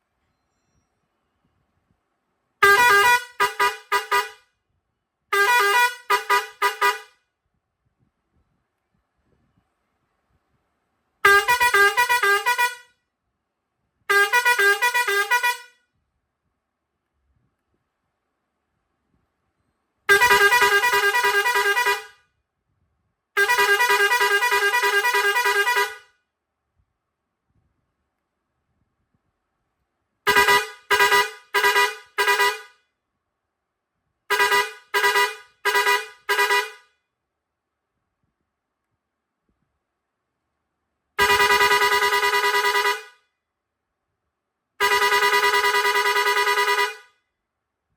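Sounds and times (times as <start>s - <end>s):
air horn playing a melody: 2.6s - 4.4s, 5.3s - 7.1s, 11.2s - 12.9s, 14.1s - 15.8s, 20.1s - 22.2s, 23.4s - 26.1s, 30.3s - 32.7s, 34.3s - 36.8s, 41.2s - 43.1s, 44.8s - 47.1s.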